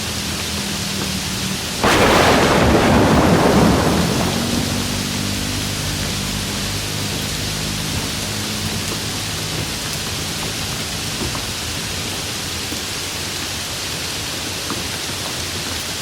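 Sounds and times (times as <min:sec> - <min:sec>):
steady rain: 0:00.0 - 0:16.0
thunderclap rumbling: 0:01.8 - 0:05.6.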